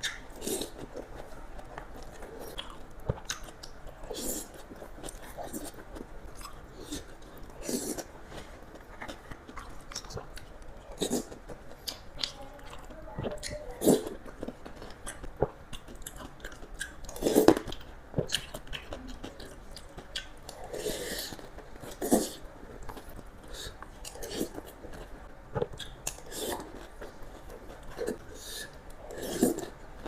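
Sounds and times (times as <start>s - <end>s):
wet chewing: 0.0s - 29.8s.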